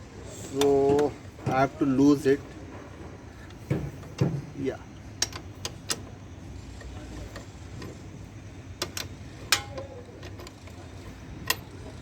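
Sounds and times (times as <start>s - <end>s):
spanner clicking on axle nut: 5.2s - 6.2s, 6.8s - 8.1s, 8.7s - 12.0s.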